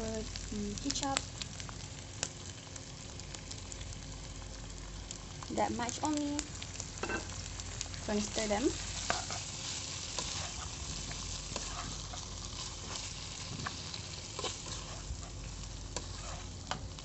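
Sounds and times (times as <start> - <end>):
pasta sizzling in a frying pan: 0.0 - 17.0
utensil scraping a pan: 8.8 - 15.4, 16.0 - 16.7.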